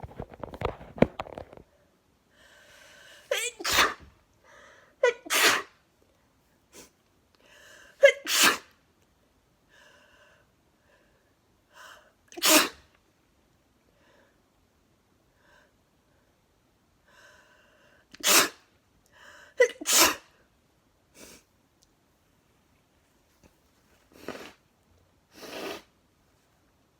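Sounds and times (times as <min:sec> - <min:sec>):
woman sneezing: 0:03.3 - 0:04.1, 0:05.0 - 0:05.8, 0:08.0 - 0:08.7, 0:12.4 - 0:12.8, 0:18.2 - 0:18.6, 0:19.6 - 0:20.3.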